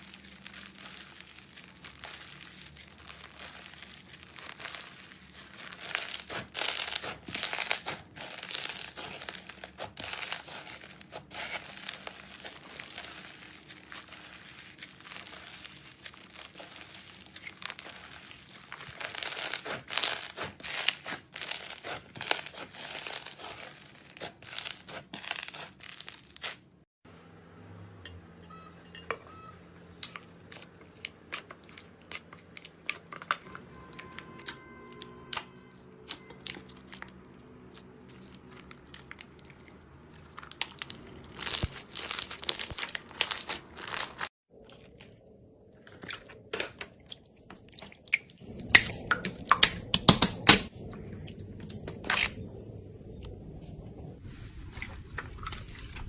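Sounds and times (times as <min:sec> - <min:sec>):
slime crackling and popping: 0:00.0 - 0:26.6, 0:35.3 - 0:45.1.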